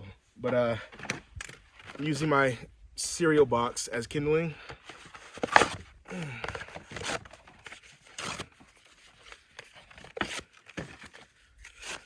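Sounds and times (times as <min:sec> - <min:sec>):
cardboard ripping: 0:05.3 - 0:05.8, 0:06.7 - 0:08.6, 0:09.9 - 0:12.0.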